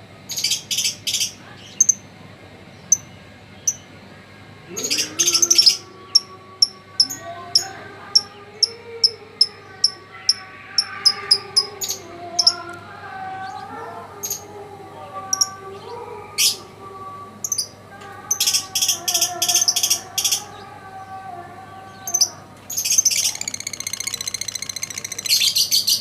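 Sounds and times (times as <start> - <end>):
wavering background noise: 0.0 - 26.0
bird chirping high-pitched: 4.8 - 12.6, 15.3 - 16.6, 22.0 - 26.0.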